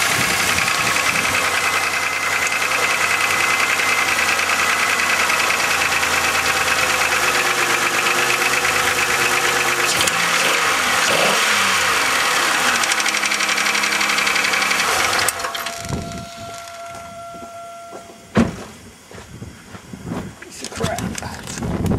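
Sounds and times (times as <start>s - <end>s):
car engine knocking clatter: 0.0s - 16.3s.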